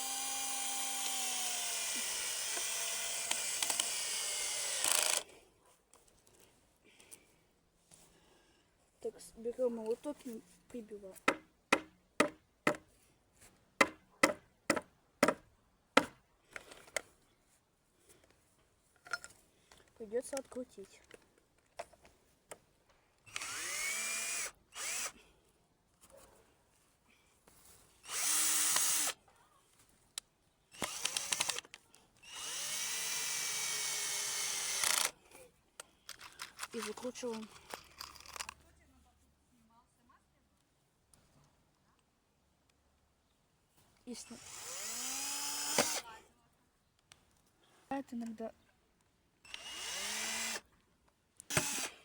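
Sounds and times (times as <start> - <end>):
cordless drill spinning: 0.0 - 5.3, 23.3 - 25.2, 28.0 - 29.2, 30.7 - 35.2, 36.1 - 38.5, 44.3 - 46.1, 49.4 - 50.7, 51.4 - 52.0
hammer hitting nail into wood: 11.2 - 12.8.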